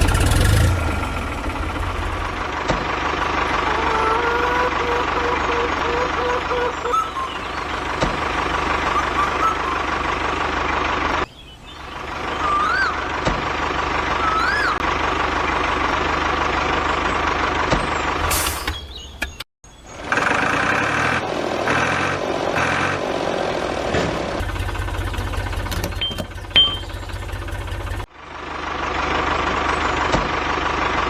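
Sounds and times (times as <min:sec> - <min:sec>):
vehicle engine running: 0:00.0 - 0:19.1, 0:19.8 - 0:31.0
rising and falling whistle: 0:06.2 - 0:07.7, 0:08.8 - 0:09.9.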